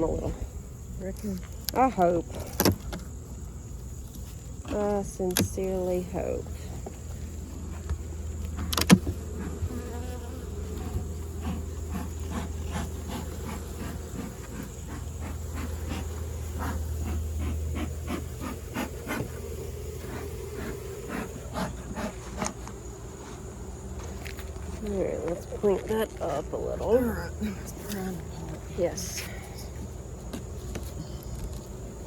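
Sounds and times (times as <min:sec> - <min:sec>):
honeybees buzzing: 0:01.7 - 0:32.0
clicks and knocks from hive: 0:07.8 - 0:17.3.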